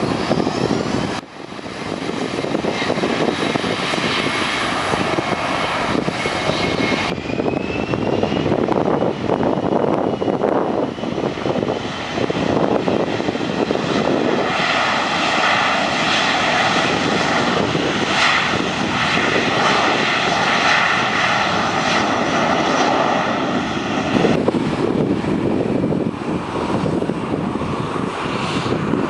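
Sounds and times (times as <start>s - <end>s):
high engine whine: 0.0s - 29.0s
jet engines roaring: 0.0s - 29.0s.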